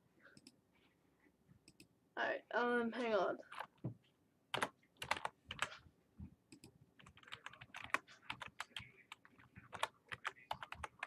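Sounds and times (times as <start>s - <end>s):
typing on computer keyboard: 4.5s - 5.7s, 6.5s - 11.0s.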